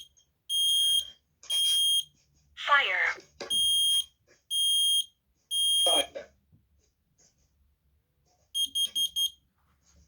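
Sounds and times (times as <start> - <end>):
alarm recorded voice: 2.6 - 3.3, 5.9 - 6.2.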